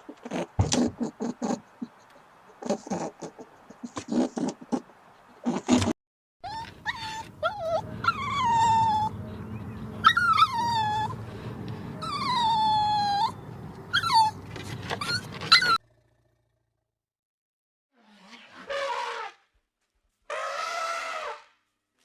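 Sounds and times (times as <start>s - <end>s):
animal yelps: 6.4s - 9.2s, 10.0s - 11.2s, 15.0s - 15.8s
animal whining calls: 6.4s - 11.2s, 12.0s - 14.4s, 15.0s - 15.8s.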